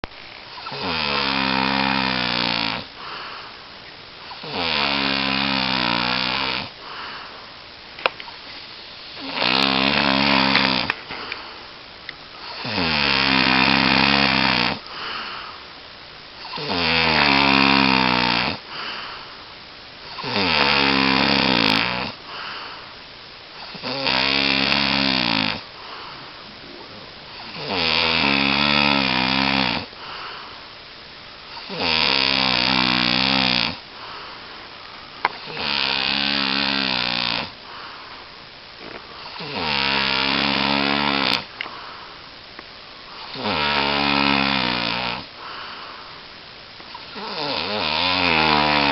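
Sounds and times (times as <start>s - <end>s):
person snoring loudly: 0.6s - 2.9s, 4.3s - 6.7s, 9.0s - 11.0s, 12.4s - 15.3s, 16.4s - 19.0s, 20.1s - 22.5s, 23.6s - 29.9s, 31.5s - 33.8s, 35.4s - 37.6s, 39.2s - 41.5s, 43.1s - 45.6s, 47.1s - 48.9s.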